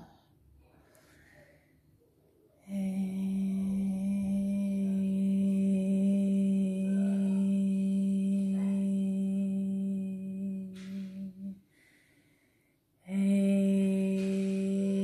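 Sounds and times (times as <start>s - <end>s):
in-breath: 0.0s - 1.9s, 11.6s - 12.9s
person humming a low note: 2.7s - 11.6s, 13.1s - 15.0s.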